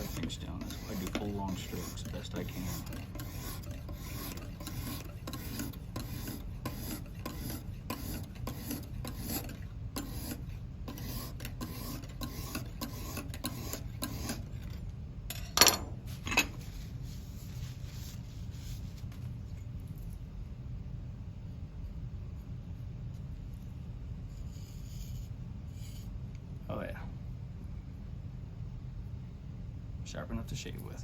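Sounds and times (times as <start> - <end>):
hone rasping on knife blade: 0.0 - 14.6.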